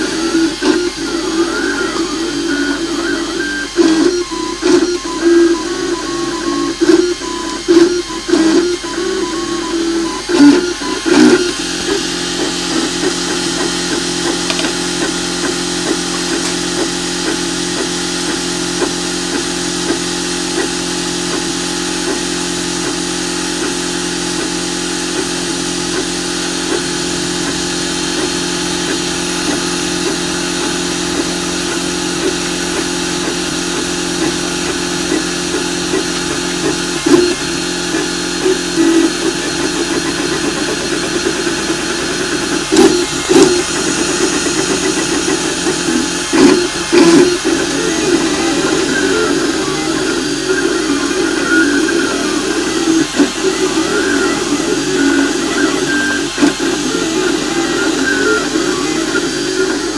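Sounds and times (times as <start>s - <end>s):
printer motors humming and ticking: 0.0s - 59.9s
printer bumps: 14.3s - 15.0s.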